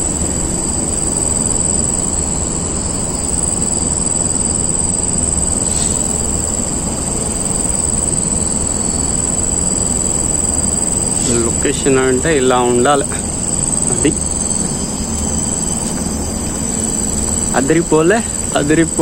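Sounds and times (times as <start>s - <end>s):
insects droning: 0.0s - 19.0s.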